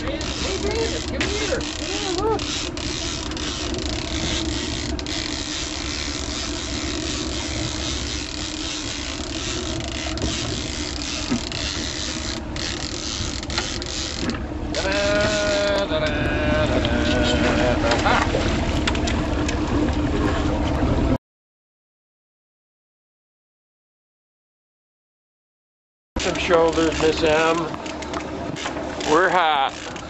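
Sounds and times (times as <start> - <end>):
fishing reel clicking and grinding: 0.0 - 15.9, 26.2 - 30.0.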